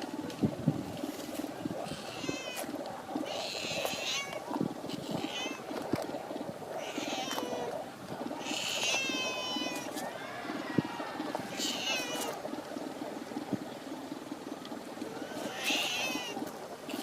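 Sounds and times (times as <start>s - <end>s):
cat crying: 8.4s - 9.9s, 11.5s - 12.4s, 15.5s - 16.4s.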